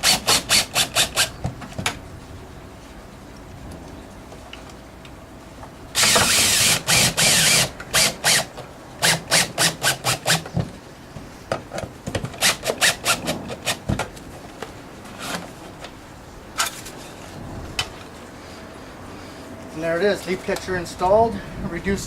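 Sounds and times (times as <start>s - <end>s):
power drill driving screws: 0.0s - 1.3s, 6.0s - 10.5s, 12.4s - 13.8s.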